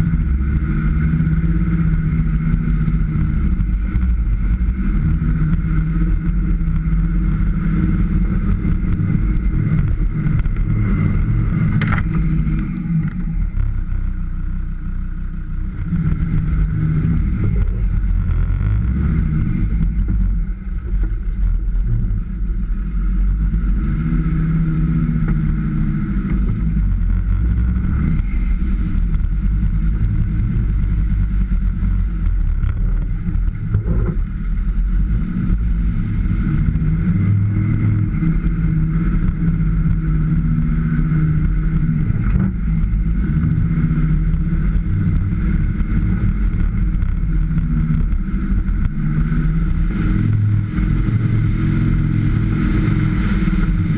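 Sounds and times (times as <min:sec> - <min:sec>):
off-road vehicle engine revving: 0:00.0 - 0:53.9.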